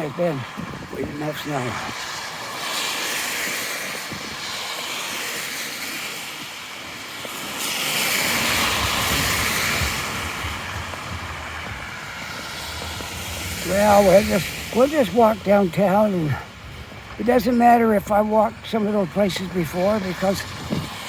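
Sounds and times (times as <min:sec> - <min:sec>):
street hum: 0:00.0 - 0:21.0
vehicle passing: 0:07.3 - 0:21.0.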